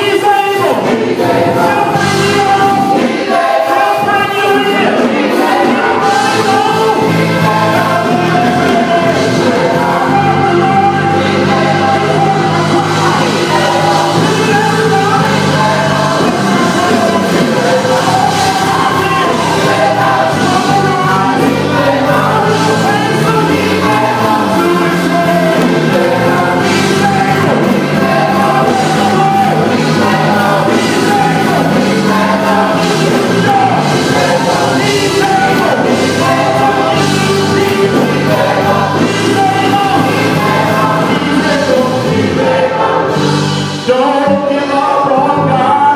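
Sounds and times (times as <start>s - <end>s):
gospel choir singing with instruments: 0.0s - 45.9s.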